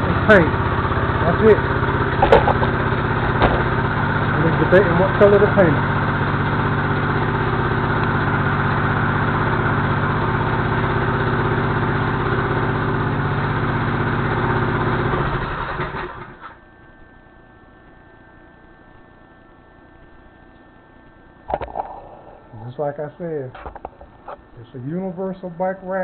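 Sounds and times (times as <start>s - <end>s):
small engine idling: 0.0s - 16.7s, 21.4s - 26.0s
faint hum: 16.6s - 26.0s.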